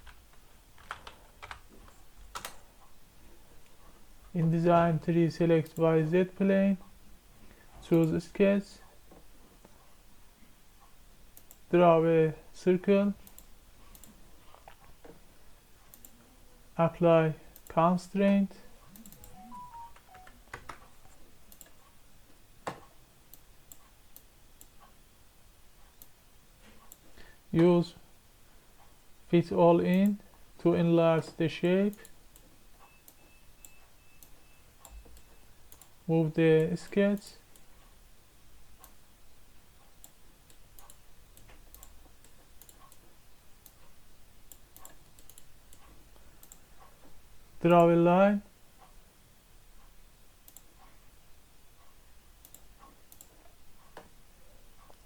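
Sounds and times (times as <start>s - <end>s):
computer mouse clicking: 0.8s - 2.9s, 11.3s - 11.6s, 13.2s - 14.8s, 15.8s - 16.2s, 18.8s - 21.9s, 31.9s - 35.9s, 40.0s - 47.0s, 50.4s - 50.9s, 51.8s - 54.1s
faint light ticks: 44.5s - 47.2s, 49.8s - 50.9s, 51.8s - 54.1s.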